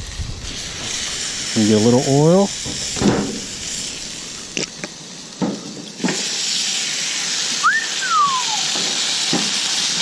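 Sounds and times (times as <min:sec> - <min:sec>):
steak sizzling on a griddle: 0:00.0 - 0:10.0
whistle-like tone: 0:07.6 - 0:08.8.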